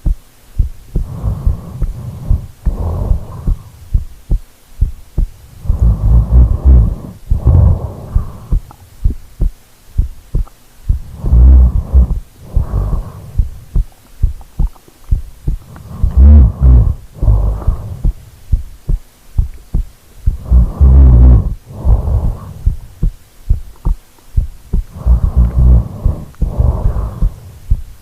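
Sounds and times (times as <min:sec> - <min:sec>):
person snoring: 0:01.0 - 0:03.9, 0:05.5 - 0:08.7, 0:11.0 - 0:13.6, 0:15.6 - 0:18.2, 0:20.3 - 0:22.8, 0:24.9 - 0:27.8.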